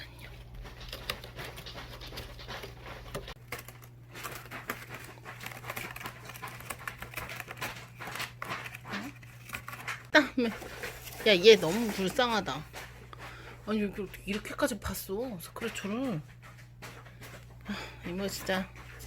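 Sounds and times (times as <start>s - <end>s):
cat scratching a scratcher: 0.0s - 14.7s.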